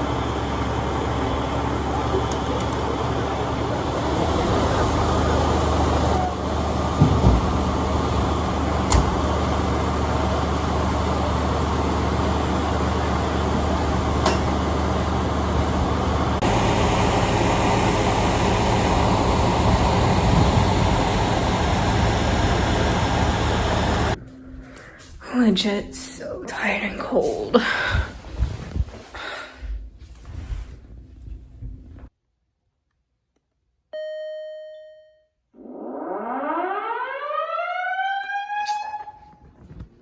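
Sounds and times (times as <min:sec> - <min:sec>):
fire truck engine idling: 0:00.0 - 0:24.2.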